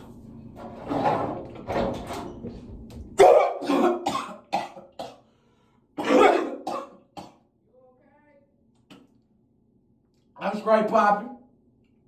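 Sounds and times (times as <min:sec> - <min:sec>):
man coughing hard: 0:03.2 - 0:05.2, 0:06.0 - 0:07.4.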